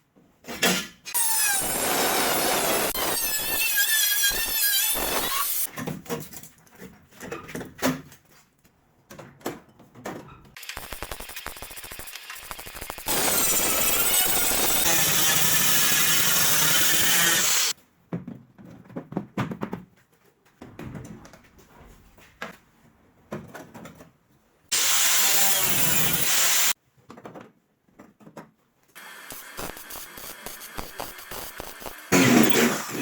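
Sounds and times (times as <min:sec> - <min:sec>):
handheld power tool running: 0:01.2 - 0:05.7, 0:10.6 - 0:17.7, 0:24.7 - 0:26.8, 0:29.0 - 0:33.0
clicks and knocks of hand work: 0:26.9 - 0:28.8.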